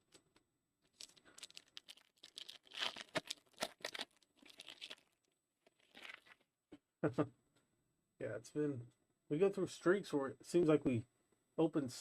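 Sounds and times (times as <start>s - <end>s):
foil wrapper crinkling: 0.9s - 6.4s.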